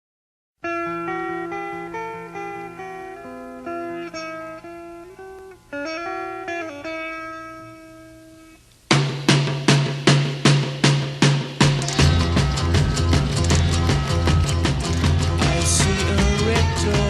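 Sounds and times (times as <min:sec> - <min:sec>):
plucked string melody: 0:00.6 - 0:08.5, 0:11.6 - 0:17.0.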